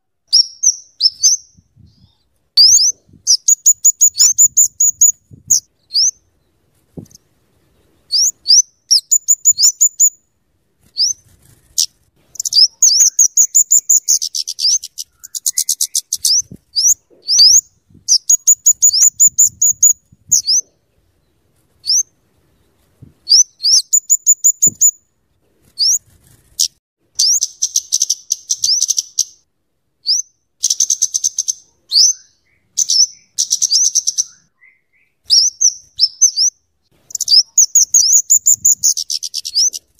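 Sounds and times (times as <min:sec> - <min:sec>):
flowerpecker calling: 0:02.6 - 0:06.2, 0:08.1 - 0:10.2, 0:12.4 - 0:20.7, 0:30.0 - 0:39.9
bird chattering runs: 0:10.9 - 0:20.7, 0:25.7 - 0:29.2.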